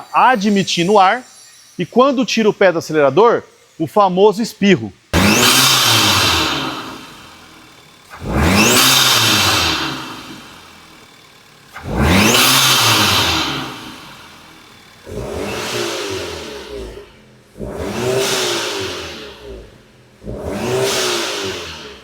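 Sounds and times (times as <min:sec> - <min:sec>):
turbo whistle and hiss: 0:00.0 - 0:04.1
car engine revving: 0:00.0 - 0:22.0.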